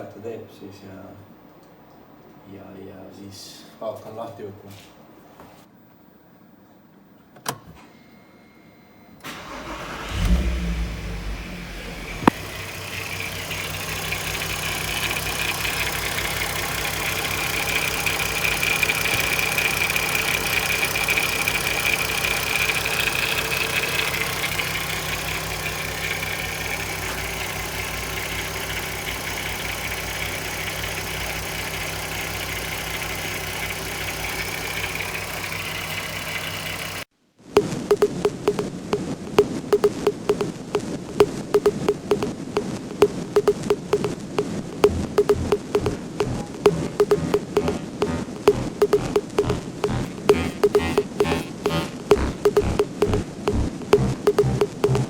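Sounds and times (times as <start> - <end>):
car engine starting and idling: 9.2 - 37.0
high-pitched engine whine: 10.1 - 37.0.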